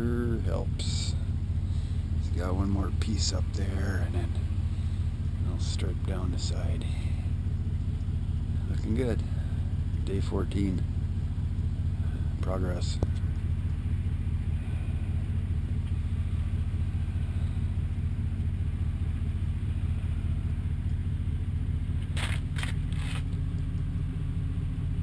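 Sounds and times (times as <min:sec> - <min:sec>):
vehicle engine idling: 0:00.0 - 0:25.0.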